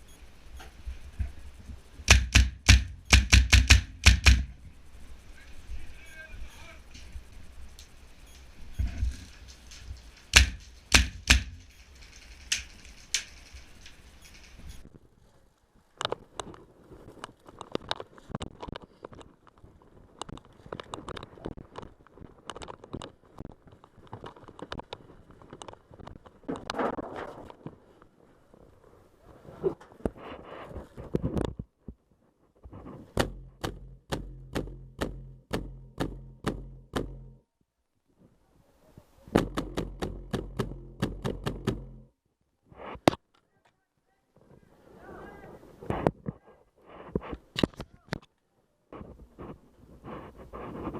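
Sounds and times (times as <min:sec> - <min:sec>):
rustling: 0:00.0 - 0:34.4, 0:42.7 - 0:50.9
airsoft rifle shots: 0:02.1 - 0:04.7, 0:08.3 - 0:14.4, 0:39.3 - 0:42.0.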